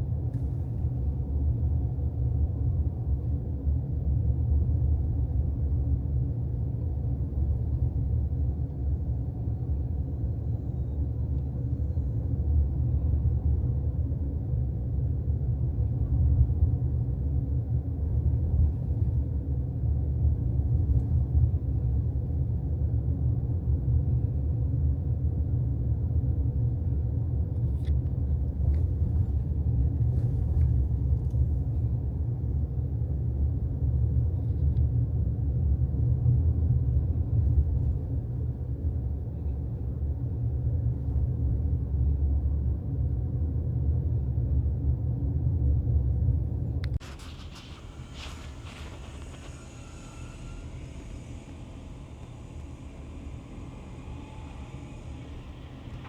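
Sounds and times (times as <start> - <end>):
faint steady hum: 0.0 - 56.0
car driving rumble: 27.6 - 34.4, 46.6 - 56.0.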